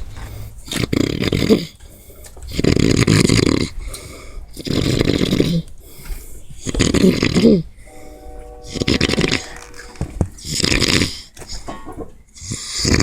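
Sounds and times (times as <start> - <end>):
quiet breathing: 0.0 - 0.7, 1.4 - 13.0
loud snoring: 0.3 - 1.8, 2.5 - 5.7, 6.6 - 7.6, 8.7 - 9.6, 10.4 - 11.3, 12.4 - 13.0.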